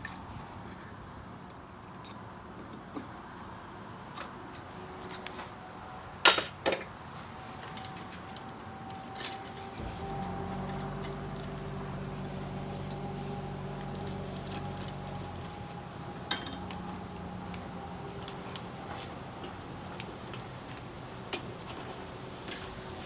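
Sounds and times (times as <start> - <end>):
bicycle chain clicking on sprockets: 14.0 - 15.6.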